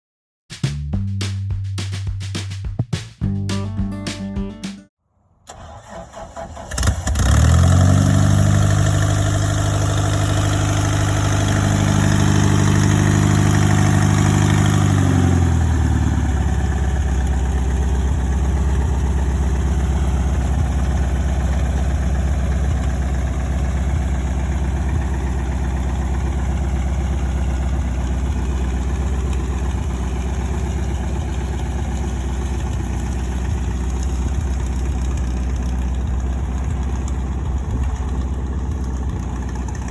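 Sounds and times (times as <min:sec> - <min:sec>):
aircraft engine idling: 0:08.4 - 0:39.9.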